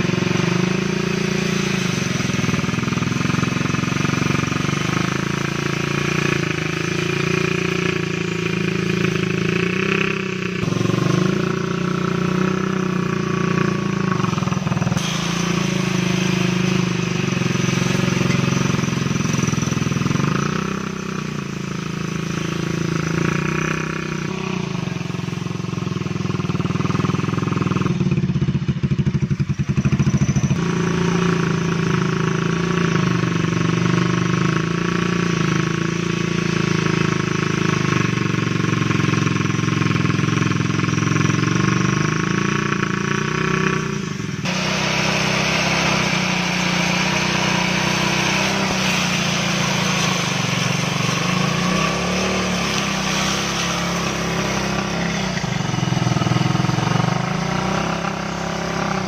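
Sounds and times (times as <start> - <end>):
grass cutter engine running: 10.6 - 20.8, 43.8 - 59.0.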